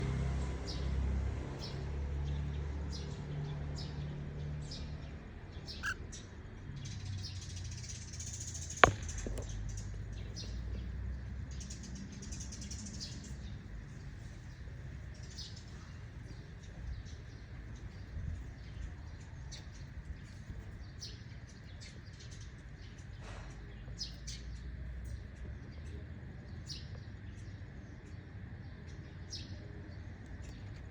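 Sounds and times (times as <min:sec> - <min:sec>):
cockatiels chirping: 0:05.6 - 0:06.1.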